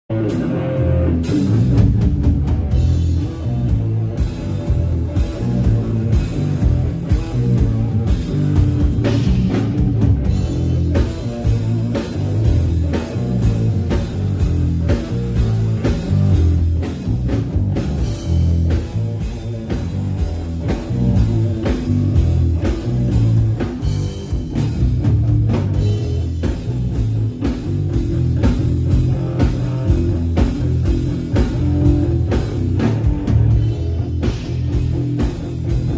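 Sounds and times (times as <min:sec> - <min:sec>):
drum kit with cymbals and snare: 0:00.1 - 0:35.9
electric guitar: 0:00.1 - 0:35.9
heavy bass line: 0:00.1 - 0:35.9.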